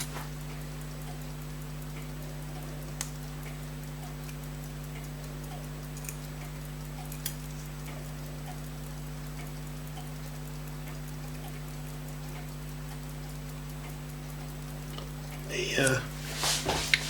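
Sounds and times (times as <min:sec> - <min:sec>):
low electrical hum: 0:00.0 - 0:17.0
tweezers clicking on watch parts: 0:05.9 - 0:08.0.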